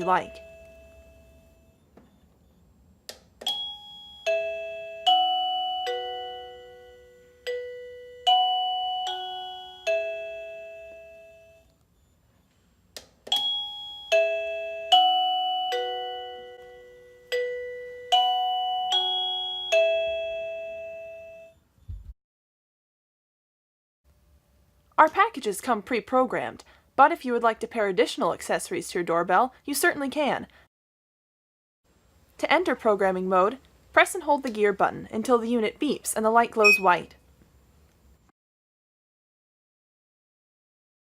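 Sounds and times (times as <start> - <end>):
doorbell electronic chime tune: 0.0 - 1.8, 3.5 - 11.7, 13.3 - 21.6, 36.6 - 37.0.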